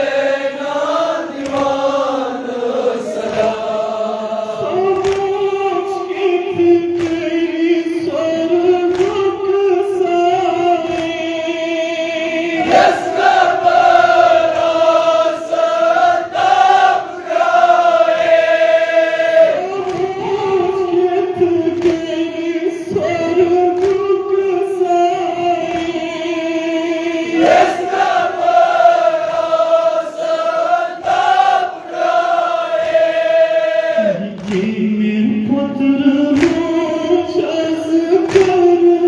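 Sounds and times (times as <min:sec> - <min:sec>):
men chanting a lament in unison: 0:00.0 - 0:39.0.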